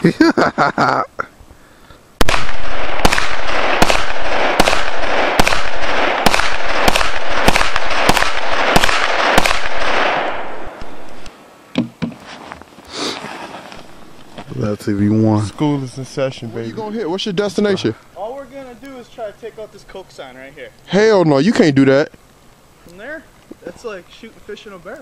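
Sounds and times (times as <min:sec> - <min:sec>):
echoing gunshots: 0:02.2 - 0:11.0.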